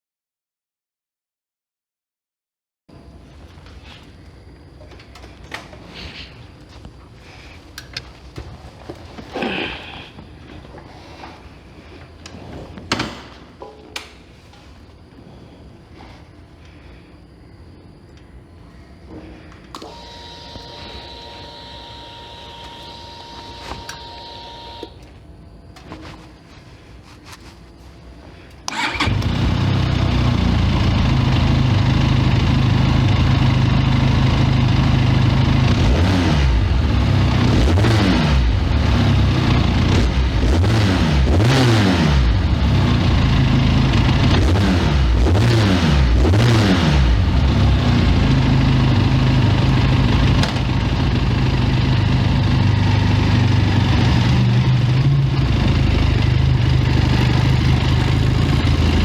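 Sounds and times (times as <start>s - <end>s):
motorcycle engine revving: 28.7s - 59.0s
motorcycle engine idling: 28.8s - 35.9s, 47.1s - 59.0s.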